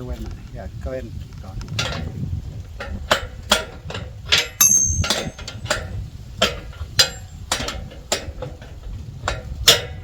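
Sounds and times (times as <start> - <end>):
brief metallic ring: 4.6 - 5.6
sharp metal clicks: 4.6 - 5.8.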